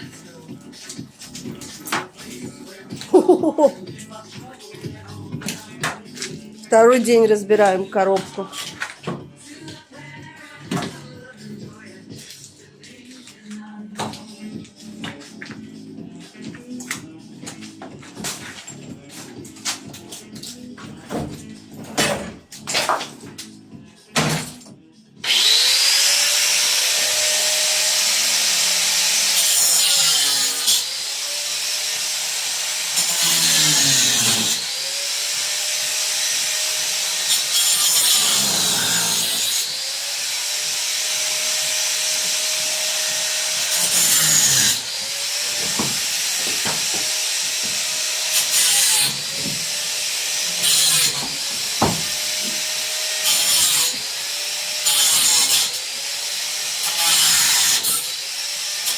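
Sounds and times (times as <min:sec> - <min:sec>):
power tool cutting: 0:25.2 - 0:58.9.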